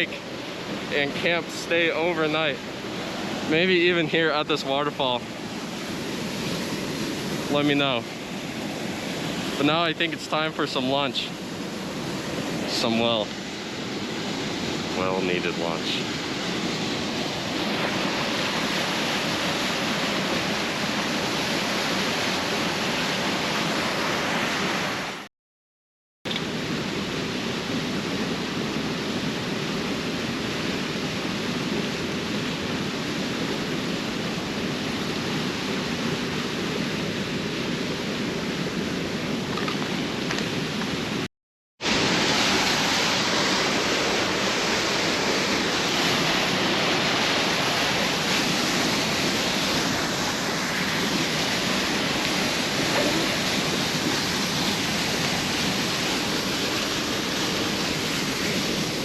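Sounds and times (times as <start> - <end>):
large waterfall rushing: 0.0 - 25.2, 33.8 - 59.0.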